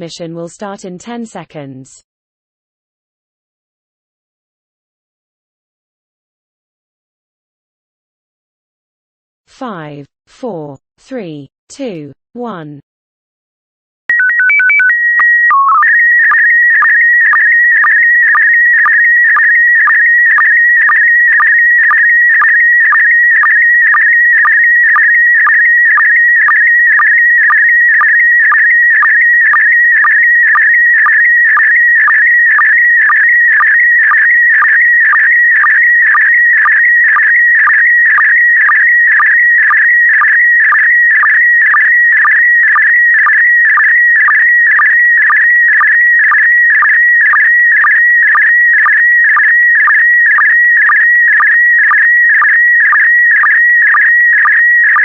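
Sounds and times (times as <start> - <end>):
short sync pulses: 14.1 - 43.9
warbling electronic signal tones: 14.1 - 55.0.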